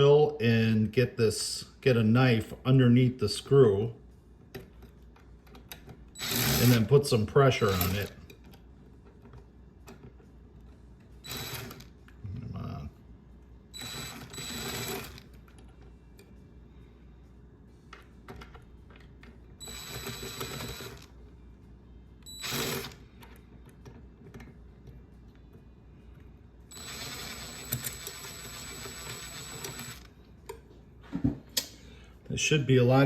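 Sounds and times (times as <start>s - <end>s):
power drill bursts: 6.2s - 6.9s, 7.6s - 8.1s, 11.3s - 11.8s, 13.8s - 15.2s, 19.6s - 21.0s, 22.3s - 23.0s, 26.7s - 30.1s.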